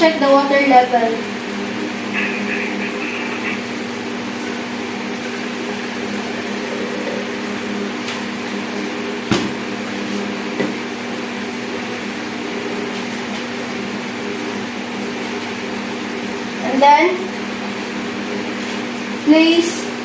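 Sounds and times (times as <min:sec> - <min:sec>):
appliance machine hum: 0:00.0 - 0:20.0.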